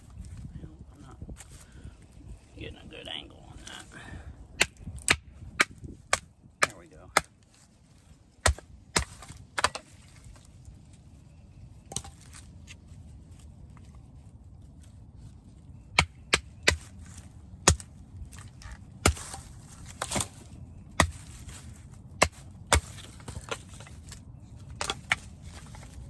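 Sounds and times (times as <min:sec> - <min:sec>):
wood splitting crackle: 0:04.6 - 0:10.7, 0:15.9 - 0:26.0.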